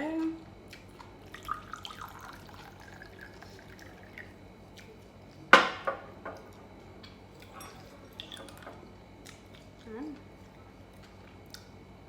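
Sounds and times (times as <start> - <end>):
tableware clinking: 7.4 - 8.8.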